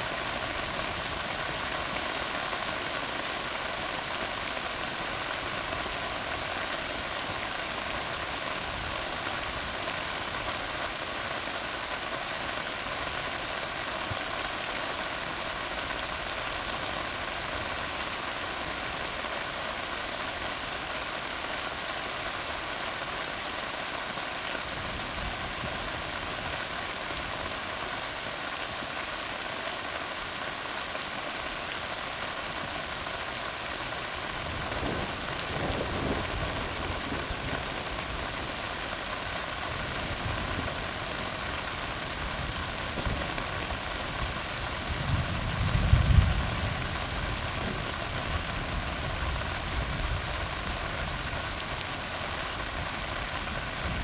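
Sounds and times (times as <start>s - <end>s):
rain falling on a road: 0.0s - 54.0s.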